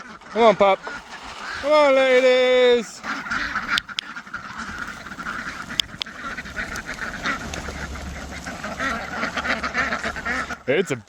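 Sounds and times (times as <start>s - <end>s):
ducks quacking: 0.0s - 11.0s
sharp clicks: 3.7s - 7.8s.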